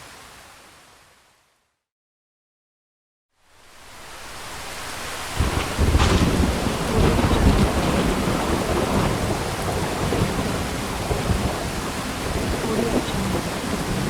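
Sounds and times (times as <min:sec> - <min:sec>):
light rain hiss: 0:03.3 - 0:14.0
thunder rumbling: 0:04.0 - 0:14.0.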